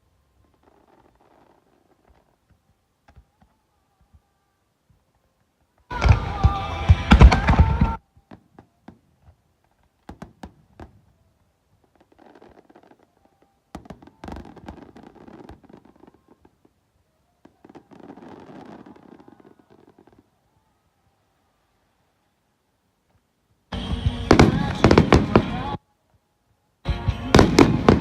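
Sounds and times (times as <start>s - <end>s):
fireworks booming: 5.9s - 9.2s, 13.7s - 16.8s, 23.7s - 25.8s, 26.9s - 28.0s
loud music: 23.8s - 25.8s, 26.9s - 28.0s.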